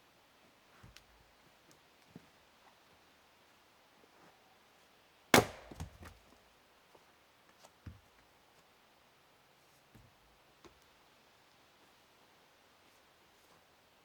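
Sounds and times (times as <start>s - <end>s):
dull thuds of pieces landing: 5.4s - 6.2s.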